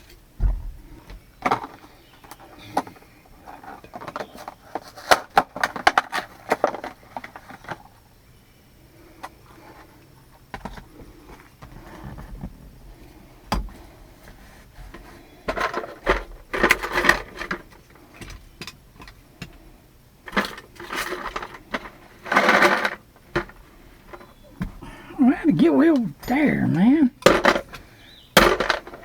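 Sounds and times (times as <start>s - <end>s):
metal parts and tools clattering: 20.3s - 24.5s, 26.2s - 29.0s
rattling and scraping: 20.3s - 25.0s, 26.2s - 29.0s.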